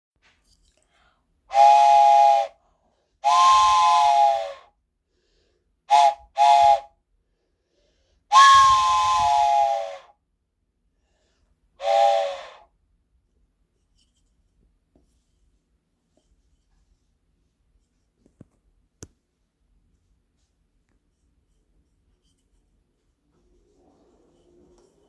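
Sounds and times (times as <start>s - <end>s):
toy train whistle blasts: 1.5s - 2.6s, 3.2s - 4.6s, 5.9s - 6.9s, 8.3s - 10.1s, 11.8s - 12.6s.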